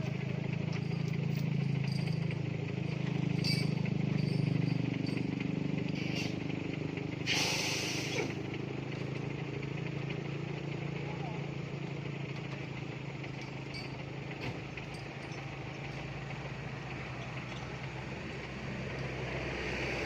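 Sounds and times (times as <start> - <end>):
diesel truck engine hum: 0.0 - 20.0
burst of hissing: 7.3 - 8.4.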